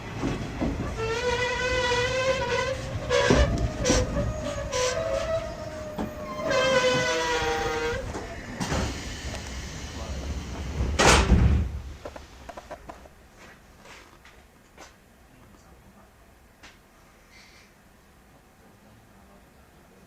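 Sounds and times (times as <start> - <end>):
train brakes squealing: 1.0 - 10.0.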